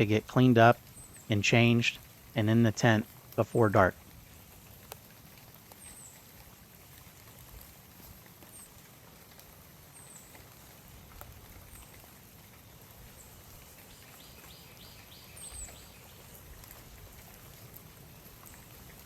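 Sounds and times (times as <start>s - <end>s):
faint steady hiss: 0.0s - 19.0s
water dripping: 0.0s - 19.0s
bird chirps: 13.8s - 16.4s.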